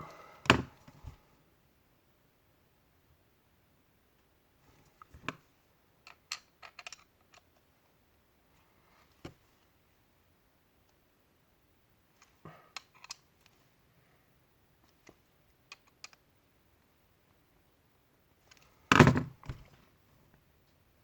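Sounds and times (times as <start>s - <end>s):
loud thunk: 0.5s - 1.2s, 18.9s - 19.6s.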